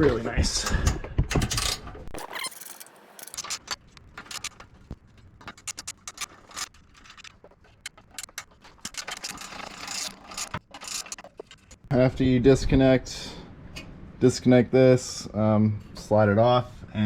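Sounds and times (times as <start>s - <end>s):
metal tools clinking and scraping: 1.4s - 11.9s.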